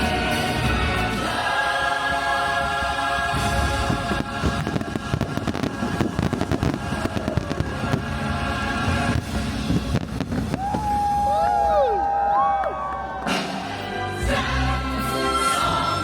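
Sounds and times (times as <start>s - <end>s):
loud show music: 0.0s - 11.4s, 12.4s - 16.0s
fireworks bangs: 3.3s - 11.8s.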